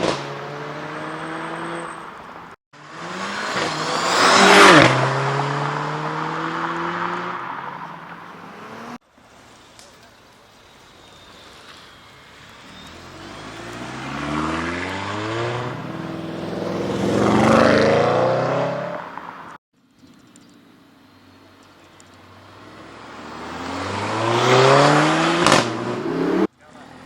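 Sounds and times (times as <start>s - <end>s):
car engine accelerating hard: 0.0s - 1.9s, 2.8s - 7.6s, 12.8s - 19.1s, 22.6s - 26.5s.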